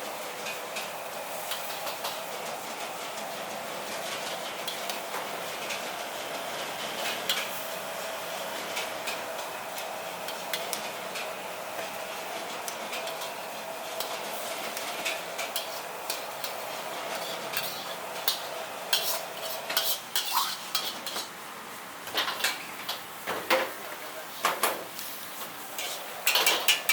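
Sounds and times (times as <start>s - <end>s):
vegetables sizzling in a wok: 0.0s - 23.4s, 24.3s - 26.9s
metal spatula scraping: 15.6s - 21.2s, 25.8s - 26.9s
spatula clanking against pan: 25.8s - 26.9s.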